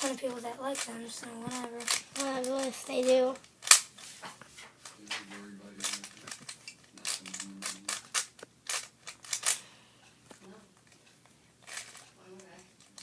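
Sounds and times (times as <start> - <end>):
plastic puzzle cube clicking: 0.7 - 0.9, 1.5 - 3.9, 5.8 - 9.6, 11.6 - 13.0.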